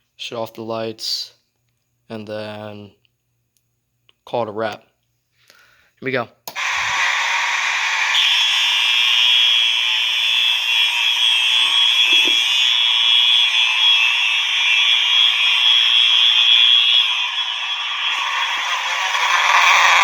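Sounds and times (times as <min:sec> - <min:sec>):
fire alarm horns: 0:06.6 - 0:20.0.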